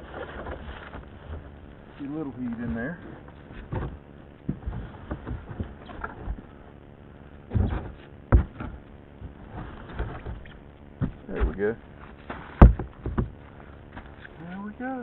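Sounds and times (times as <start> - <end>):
knocks and thumps of handling: 2.4 - 6.6, 7.5 - 14.3.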